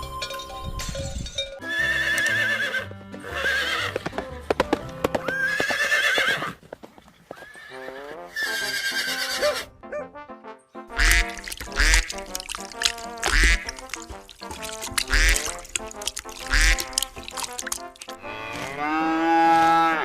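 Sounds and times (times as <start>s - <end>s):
background music: 0.0s - 6.0s, 7.7s - 19.2s
hoof clip-clops: 0.2s - 9.6s, 10.9s - 20.0s
horse whinnying: 1.6s - 4.2s, 5.1s - 6.6s, 7.3s - 9.7s, 14.6s - 20.0s.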